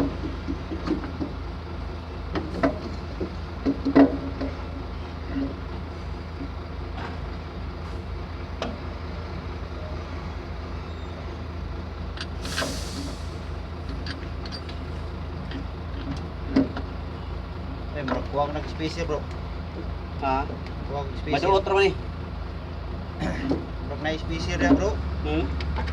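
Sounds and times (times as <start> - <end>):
engine idling: 0.0 - 25.9
short hiss: 12.4 - 13.5.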